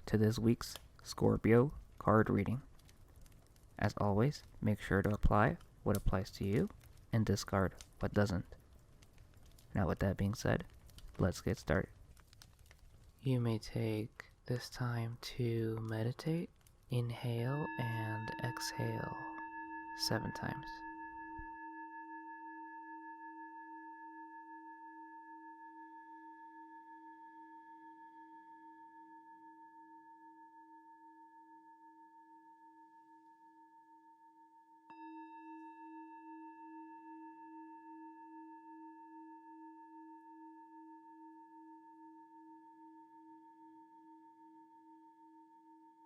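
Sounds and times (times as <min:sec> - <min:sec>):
singing bowl ringing: 0:17.1 - 0:46.0.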